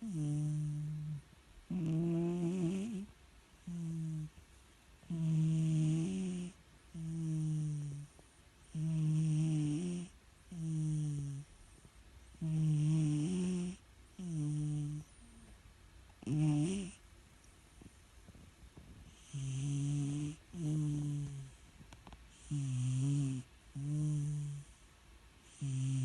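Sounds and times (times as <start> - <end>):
cat snoring: 0.0 - 4.4, 5.1 - 11.7, 12.4 - 15.5, 16.2 - 17.0, 19.0 - 21.7, 22.3 - 24.8, 25.4 - 26.0.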